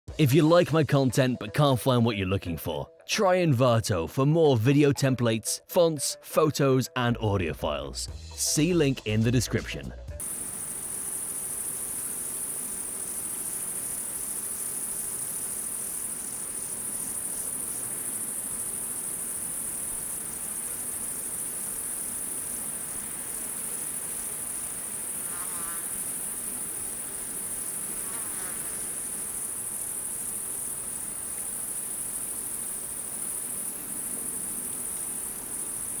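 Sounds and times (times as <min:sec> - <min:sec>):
crickets chirping: 0:10.2 - 0:36.0.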